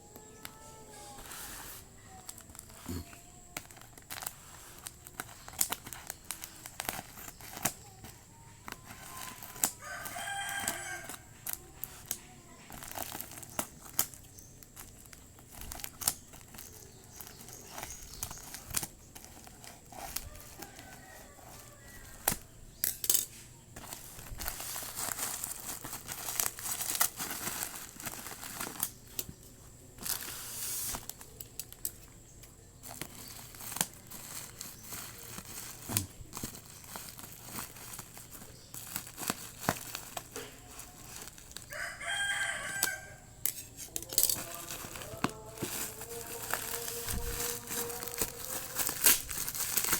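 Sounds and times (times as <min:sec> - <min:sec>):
packaging crinkling and tearing: 0:00.0 - 0:49.9
rooster crowing: 0:09.1 - 0:11.4, 0:20.0 - 0:22.5, 0:41.5 - 0:43.4.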